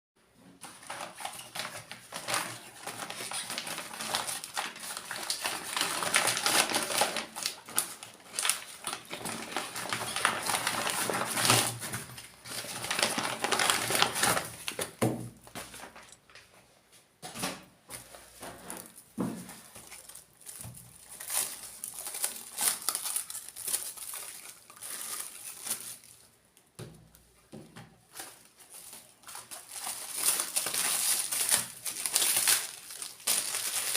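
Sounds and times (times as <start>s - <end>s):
packaging crinkling and rustling: 0.6s - 16.6s, 17.4s - 33.9s.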